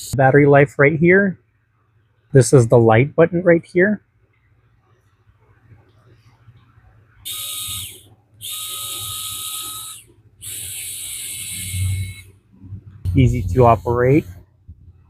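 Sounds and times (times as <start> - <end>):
electric screwdriver motor whine: 7.3 - 12.3.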